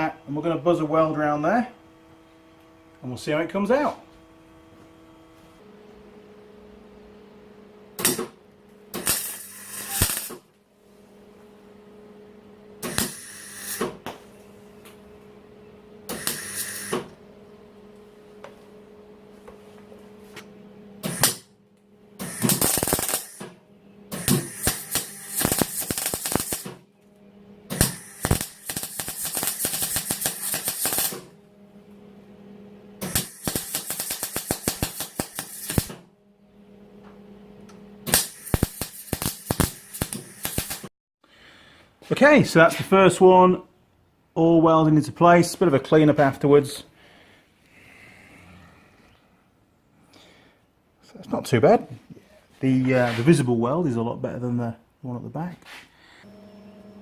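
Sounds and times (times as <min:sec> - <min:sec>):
arc welding crackling: 0:08.9 - 0:10.5, 0:12.8 - 0:13.9, 0:16.1 - 0:17.0, 0:22.2 - 0:26.8, 0:27.7 - 0:31.4, 0:33.0 - 0:36.0, 0:38.1 - 0:40.9.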